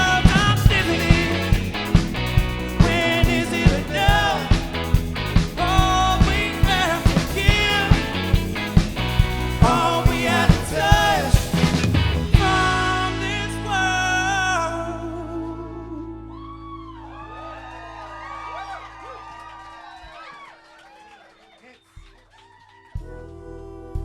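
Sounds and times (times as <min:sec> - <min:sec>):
person singing: 0:00.0 - 0:02.1, 0:02.7 - 0:16.9, 0:23.0 - 0:24.0
steady drum beat: 0:00.0 - 0:13.7
rock band playing: 0:00.0 - 0:15.8.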